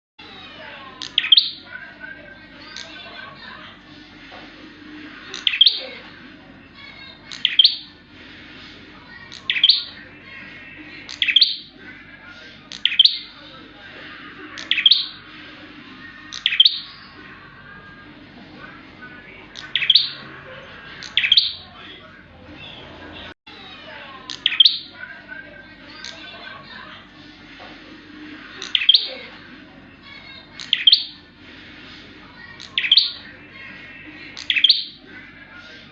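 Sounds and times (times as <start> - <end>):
soft bird chirping: 0.9 - 3.2, 5.2 - 6.0, 6.9 - 7.9, 9.1 - 11.8, 12.6 - 13.4, 14.5 - 15.3, 15.9 - 18.0, 19.5 - 20.2, 21.0 - 21.7, 24.2 - 25.1, 28.5 - 29.3, 30.1 - 31.2, 32.4 - 35.1.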